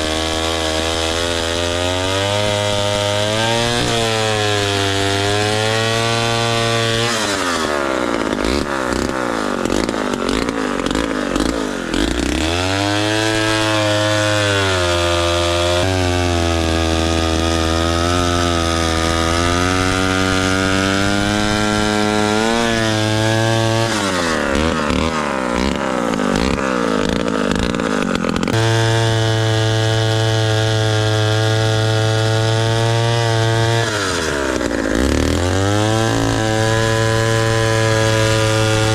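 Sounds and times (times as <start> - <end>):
chainsaw engine cutting wood: 0.0 - 38.9.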